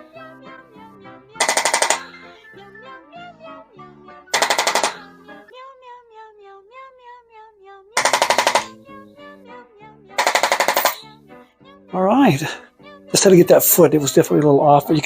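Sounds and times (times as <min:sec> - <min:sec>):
rapid bursts of clicks: 0:01.4 - 0:02.1, 0:04.4 - 0:05.1, 0:08.0 - 0:08.8, 0:10.2 - 0:11.0.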